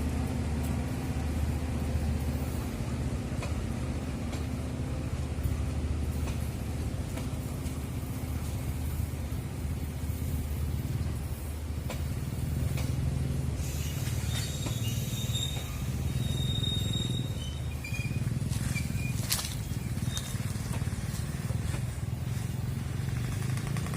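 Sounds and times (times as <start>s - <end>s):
diesel train rumble: 0.0s - 23.9s
train knocks: 2.7s - 9.0s, 11.7s - 22.1s.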